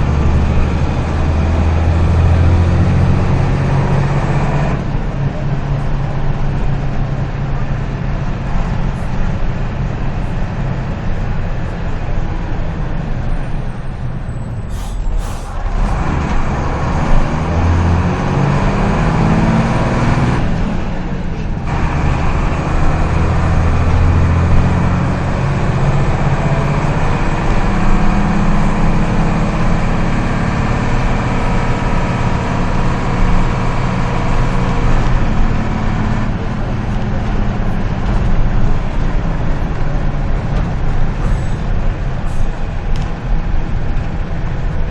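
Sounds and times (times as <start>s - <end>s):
bus diesel engine running: 0.0s - 44.9s
short sharp hiss: 14.7s - 15.6s.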